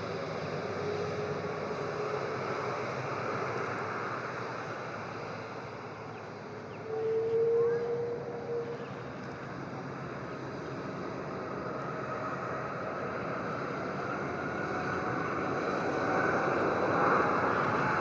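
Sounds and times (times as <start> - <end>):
jet engines running: 0.0 - 18.0.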